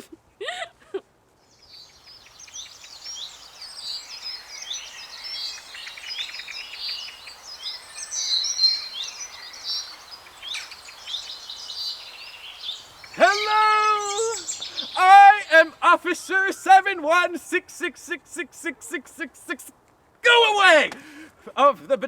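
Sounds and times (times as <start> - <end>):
songbirds singing: 1.4 - 16.9.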